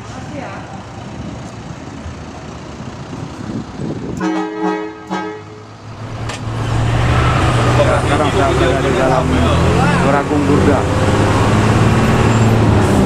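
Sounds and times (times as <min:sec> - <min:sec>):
engine rumbling: 0:00.0 - 0:13.0
vehicle horn: 0:04.2 - 0:05.8.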